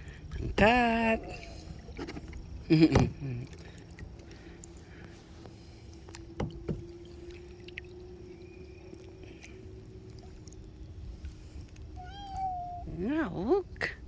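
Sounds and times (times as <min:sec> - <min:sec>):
steady low hum: 0:00.0 - 0:14.0
water lapping around kayak: 0:00.0 - 0:14.0
light knocks: 0:06.1 - 0:07.0.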